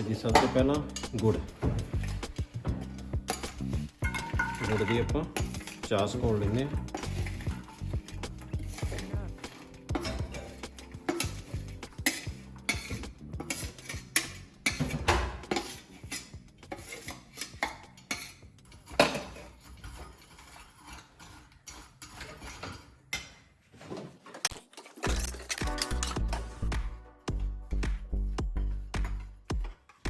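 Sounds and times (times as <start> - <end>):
utensil clinking and scraping pan: 0.0 - 26.7.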